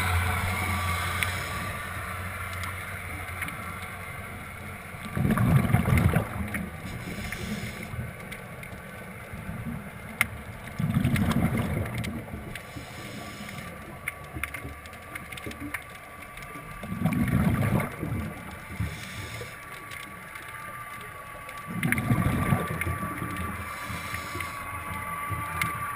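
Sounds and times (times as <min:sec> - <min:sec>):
underwater regulator bubbling exhalations: 0:05.0 - 0:07.8, 0:10.7 - 0:13.6, 0:16.8 - 0:19.5, 0:21.7 - 0:24.6.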